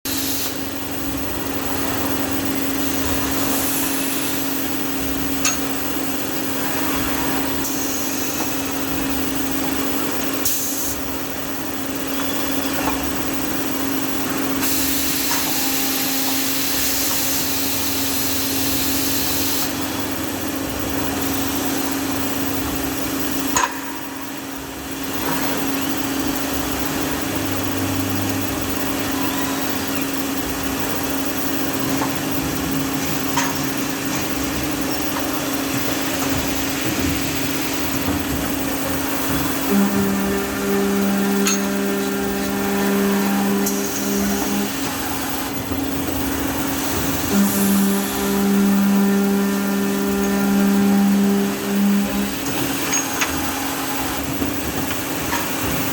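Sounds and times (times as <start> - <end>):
cnc machine humming: 0.1 - 55.9.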